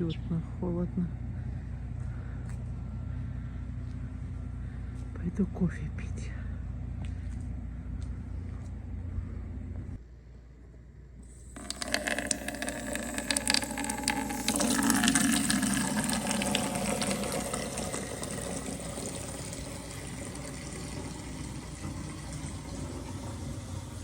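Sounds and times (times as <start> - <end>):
water filling container: 11.3 - 24.0.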